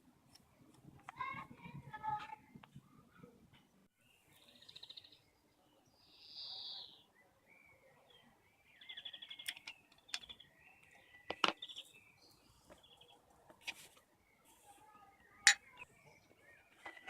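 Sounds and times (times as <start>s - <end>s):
birds chirping in trills: 4.0s - 17.0s.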